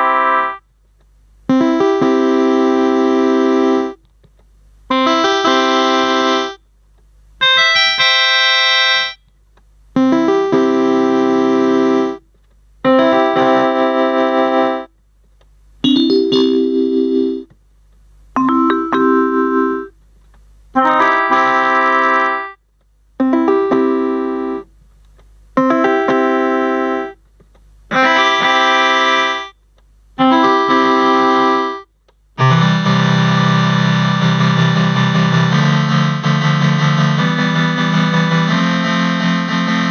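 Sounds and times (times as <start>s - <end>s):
electronic keyboard chords: 0.0s - 0.7s, 1.5s - 4.0s, 4.9s - 6.6s, 7.4s - 9.2s, 10.0s - 12.2s, 12.8s - 14.9s, 15.8s - 17.5s, 18.4s - 20.0s, 20.7s - 22.6s, 23.2s - 24.7s, 25.5s - 27.2s, 27.9s - 29.6s, 30.2s - 39.9s.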